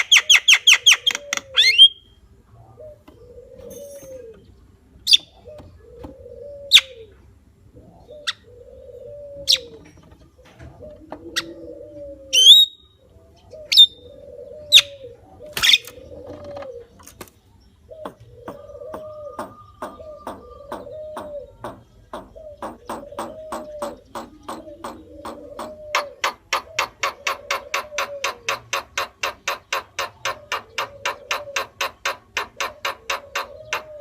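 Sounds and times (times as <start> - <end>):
bird giving sharp high calls: 0.0 - 2.1, 12.3 - 13.0
low cooing: 0.8 - 17.0, 17.9 - 34.0.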